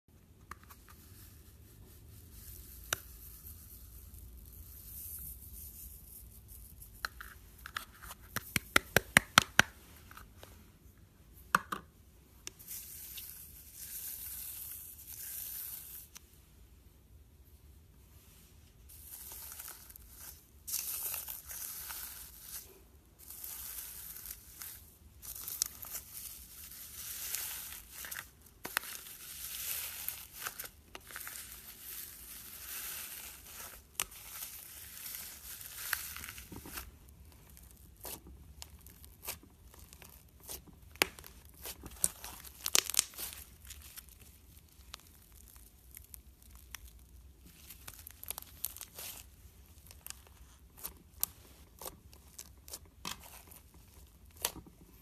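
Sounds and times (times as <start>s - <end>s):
slime crackling and tearing: 18.9s - 55.0s.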